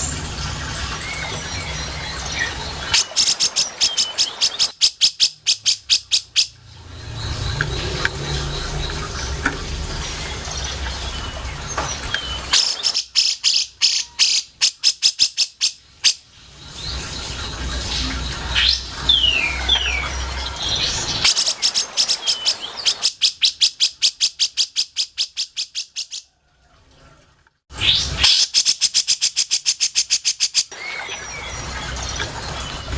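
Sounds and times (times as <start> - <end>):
bird chattering trills: 1.8 - 6.6.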